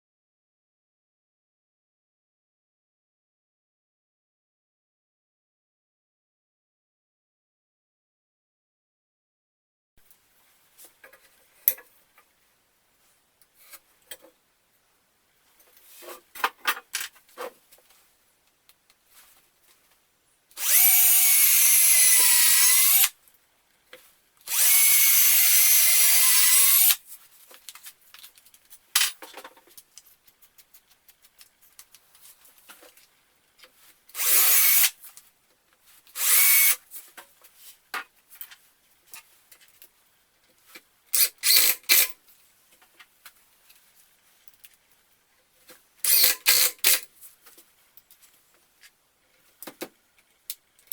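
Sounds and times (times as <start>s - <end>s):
electric drill motor whine: 20.6s - 23.1s, 24.5s - 27.0s, 34.2s - 34.9s, 36.2s - 36.8s.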